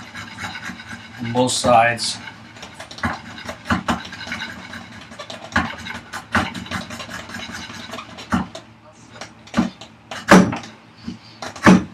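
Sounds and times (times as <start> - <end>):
hand tool scraping wood: 0.0 - 8.6.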